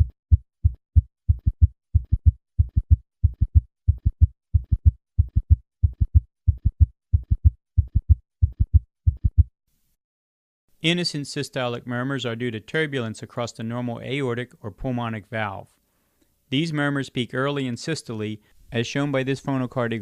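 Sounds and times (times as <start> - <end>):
fast heartbeat thumps: 0.0 - 9.5.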